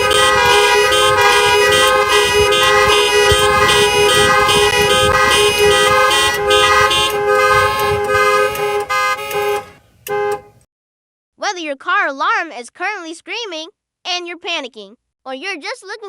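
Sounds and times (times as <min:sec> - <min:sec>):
car alarm horn honking: 0:00.0 - 0:10.6.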